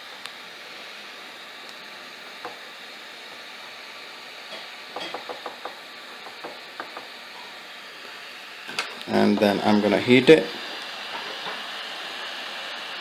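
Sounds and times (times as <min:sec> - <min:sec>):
faint hiss: 0:00.0 - 0:13.0
tool tapping circuit board: 0:05.0 - 0:07.1.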